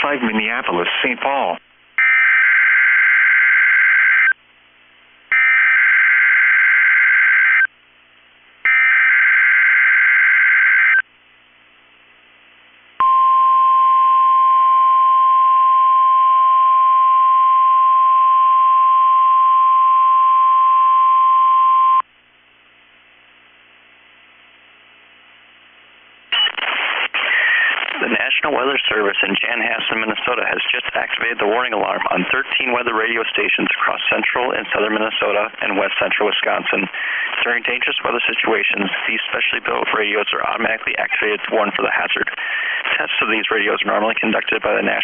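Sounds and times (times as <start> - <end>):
faint radio hiss: 0.0 - 2.0, 22.1 - 45.0
warning alarm tone: 2.0 - 4.4, 5.3 - 7.7, 8.7 - 11.0.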